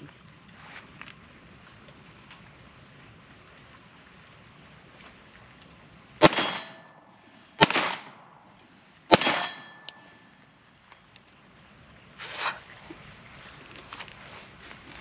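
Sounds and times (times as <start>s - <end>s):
pistol shots with metallic ring: 6.2s - 10.5s.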